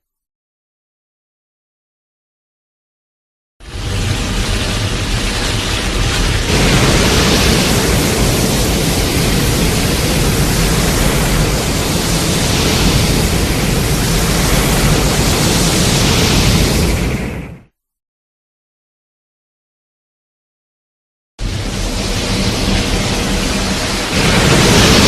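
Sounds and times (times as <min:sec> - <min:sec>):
loud steady rushing noise: 0:03.6 - 0:17.7, 0:21.4 - 0:25.0.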